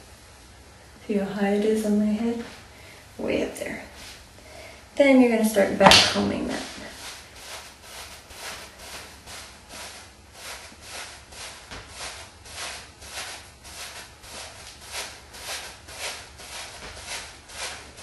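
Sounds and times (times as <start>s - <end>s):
comb rasping through hair: 5.8s - 18.0s.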